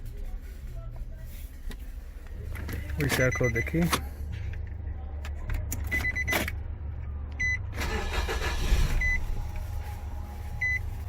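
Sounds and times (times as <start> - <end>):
high electronic beep: 8.9 - 9.3, 10.6 - 10.8.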